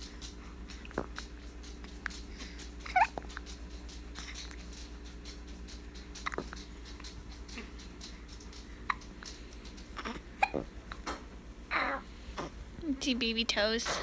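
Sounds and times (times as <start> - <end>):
baby hiccuping: 10.0 - 10.7.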